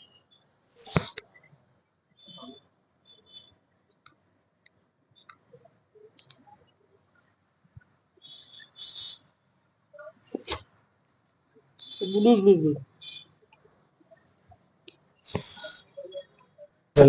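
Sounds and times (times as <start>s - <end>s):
short hissy whistle-like bursts: 8.2s - 9.2s, 15.3s - 15.8s.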